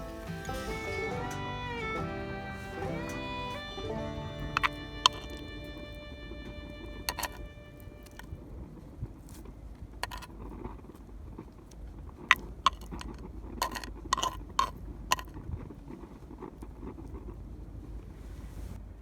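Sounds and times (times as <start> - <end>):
sharp clicks and knocks: 7.0 - 8.2, 10.0 - 10.3, 12.3 - 15.4.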